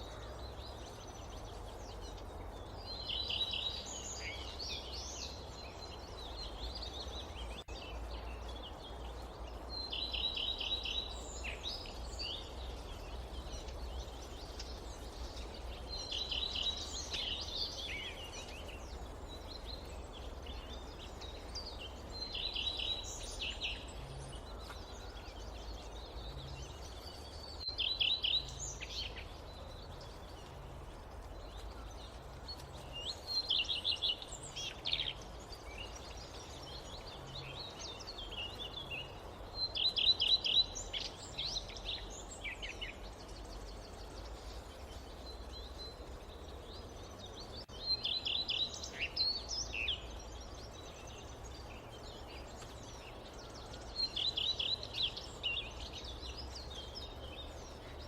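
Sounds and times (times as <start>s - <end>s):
low forest rumble: 0.0s - 39.8s.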